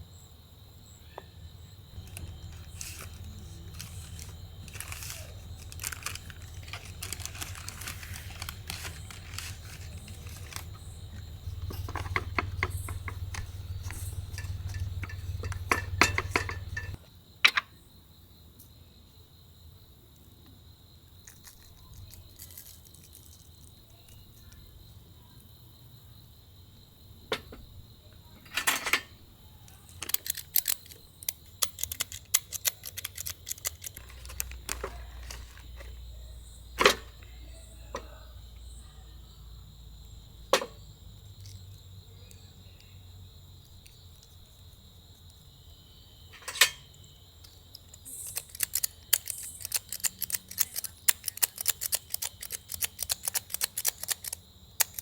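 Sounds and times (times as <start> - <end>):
crickets chirping: 0.0 - 55.0
cookware and utensils clinking: 11.7 - 17.6, 28.4 - 29.2, 46.3 - 46.9.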